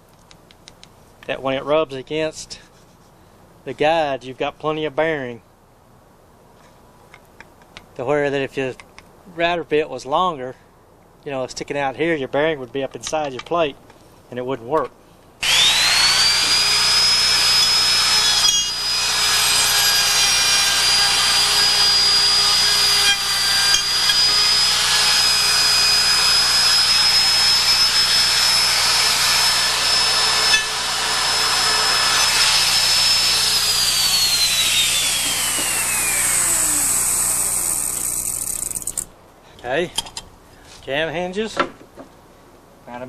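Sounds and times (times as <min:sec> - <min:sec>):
electric router whining: 0:15.4 - 0:39.1
router motor spinning down: 0:15.4 - 0:39.1.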